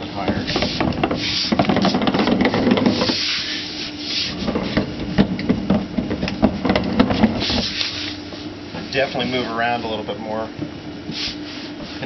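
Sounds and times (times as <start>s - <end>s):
ball chair rubbing and creaking: 0.0s - 10.3s, 11.0s - 12.0s
small irregular knocks: 0.2s - 3.2s, 4.5s - 7.4s.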